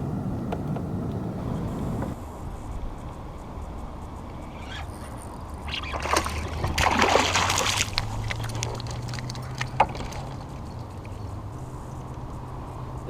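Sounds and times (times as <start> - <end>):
light clicks and knocks: 0.4 - 2.2
water splashing: 4.9 - 11.3.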